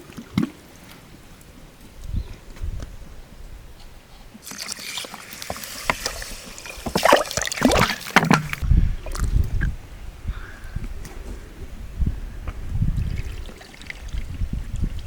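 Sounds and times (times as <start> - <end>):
water sloshing in a container: 4.4 - 9.5, 12.9 - 15.0.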